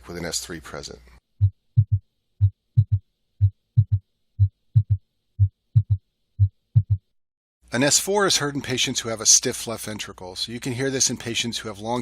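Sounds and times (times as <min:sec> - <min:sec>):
heartbeat with gallop rhythm: 0:01.4 - 0:07.1.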